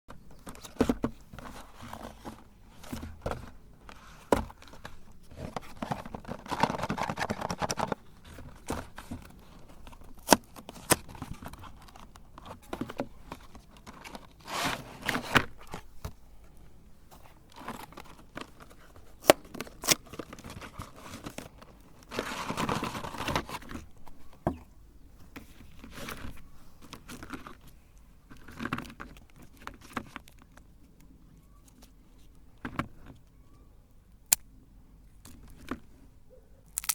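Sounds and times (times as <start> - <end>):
rustling: 0.3 - 30.7
packaging crinkling and tearing: 4.6 - 12.7, 17.5 - 23.8, 36.7 - 36.9.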